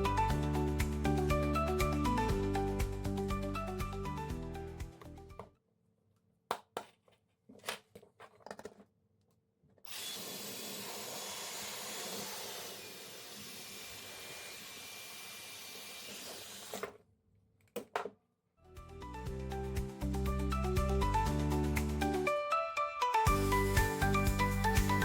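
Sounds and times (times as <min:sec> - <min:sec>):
hair dryer running: 0:09.9 - 0:16.8.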